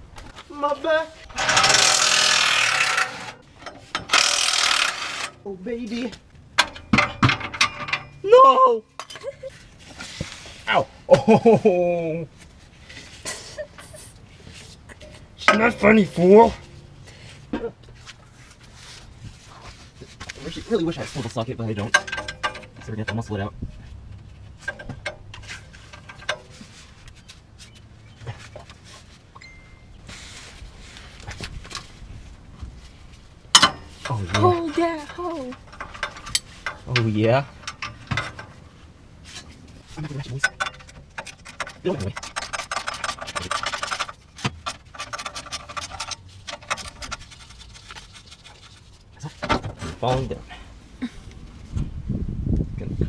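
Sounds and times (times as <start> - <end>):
hand tools clicking on metal: 21.8 - 23.2, 33.5 - 38.5, 40.0 - 48.4.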